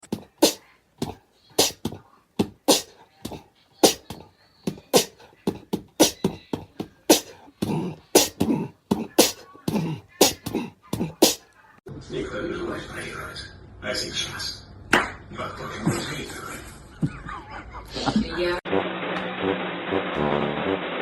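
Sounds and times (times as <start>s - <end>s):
beatbox percussive beat: 0.0s - 11.5s.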